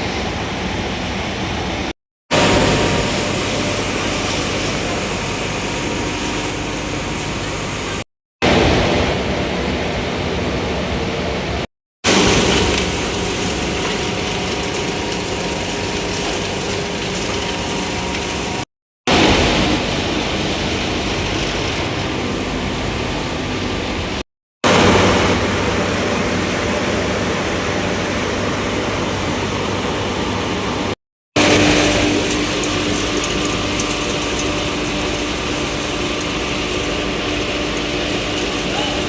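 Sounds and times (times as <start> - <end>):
motors humming: 12.1 - 39.0
loud rushing roar: 19.1 - 33.6.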